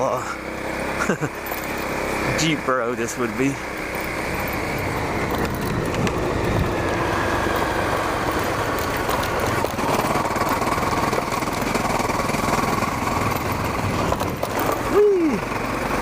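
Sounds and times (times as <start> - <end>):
dirt bike engine running: 0.0 - 16.0.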